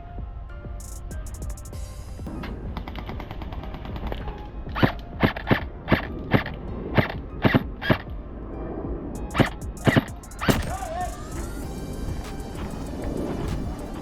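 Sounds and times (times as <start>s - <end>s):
airsoft pistol shots: 9.8s - 11.6s.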